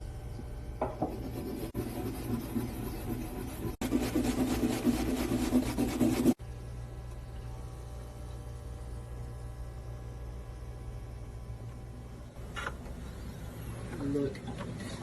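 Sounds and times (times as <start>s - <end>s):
root rasping on a grater: 1.1s - 6.4s.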